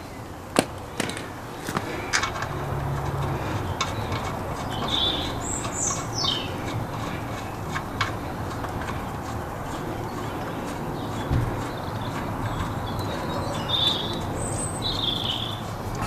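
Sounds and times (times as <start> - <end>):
outdoor background noise: 0.0 - 16.0
bird chirping: 3.4 - 16.0.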